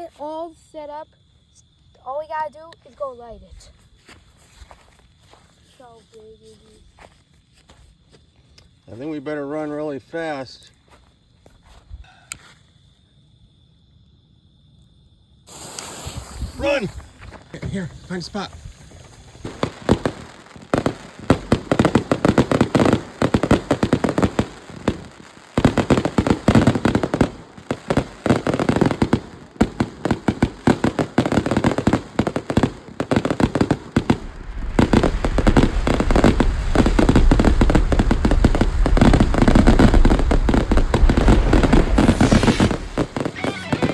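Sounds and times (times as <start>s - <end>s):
deep firework booms: 15.5s - 43.9s
firework bangs and crackles: 15.5s - 43.9s.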